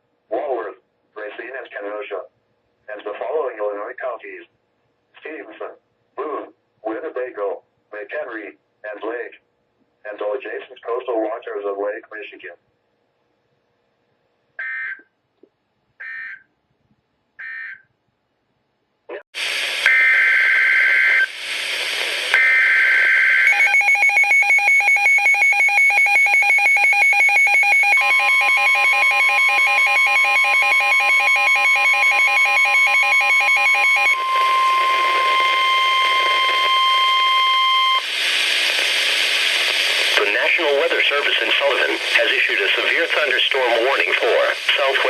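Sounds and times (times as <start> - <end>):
steady warning tone: 19.5 - 45.0
pulsing multi-tone alarm: 19.8 - 21.4, 22.3 - 38.1
two-tone screeching data bursts: 19.8 - 43.4.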